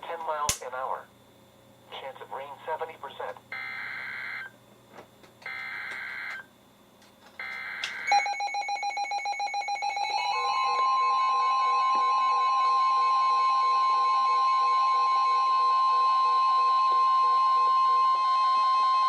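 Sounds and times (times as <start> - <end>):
weather radio alarm tone: 5.5 - 6.4, 9.2 - 19.0.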